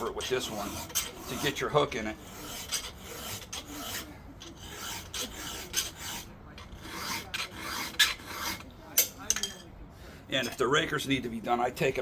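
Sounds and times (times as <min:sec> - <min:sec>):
file rasping on saw chain: 0:00.0 - 0:08.7.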